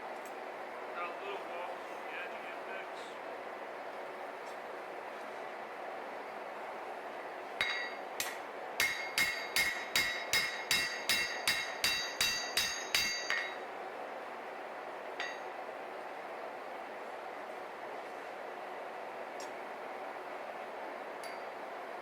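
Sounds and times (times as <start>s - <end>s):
hammer striking blade on anvil: 7.6s - 13.6s, 15.2s - 15.5s.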